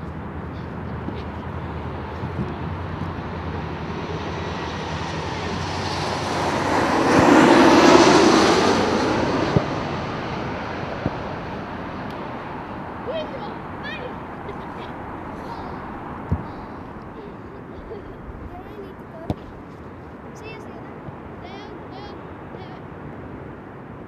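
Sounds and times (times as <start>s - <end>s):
vehicle passing by: 0.0s - 24.0s.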